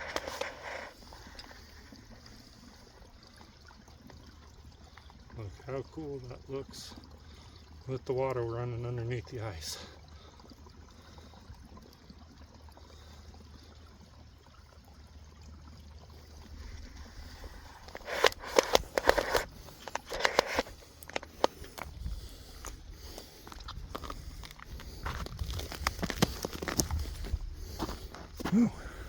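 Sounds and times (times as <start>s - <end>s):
faint running water: 0.0s - 29.0s
footsteps crunching on ice and rock: 22.6s - 28.8s.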